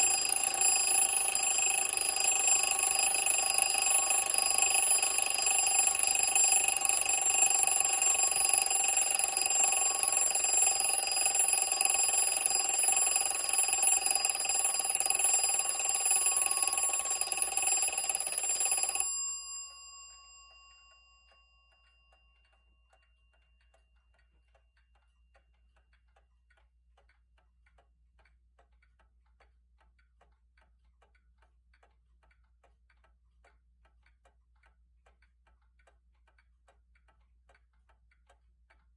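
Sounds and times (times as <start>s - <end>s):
clock alarm ringing: 0.0s - 22.0s
faint clock ticking: 0.0s - 38.9s.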